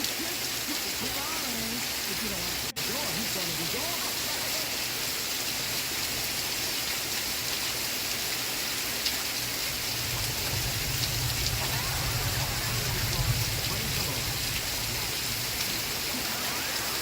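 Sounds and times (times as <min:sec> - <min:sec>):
rain falling: 0:00.0 - 0:17.0
low rumble: 0:09.8 - 0:17.0.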